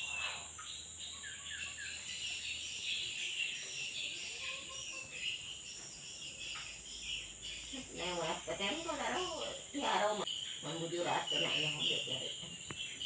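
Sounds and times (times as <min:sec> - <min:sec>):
bird chirps: 0:00.0 - 0:13.0
crickets chirping: 0:00.0 - 0:13.0.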